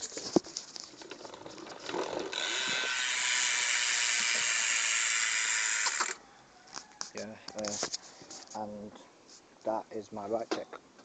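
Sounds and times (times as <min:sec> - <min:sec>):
bicycle freewheel ratchet buzzing: 0:02.0 - 0:06.2.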